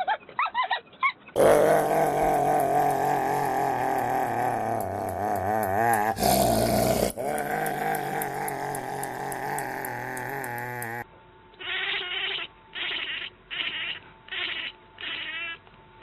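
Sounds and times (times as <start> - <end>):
animal short repeated cries: 11.6 - 15.6.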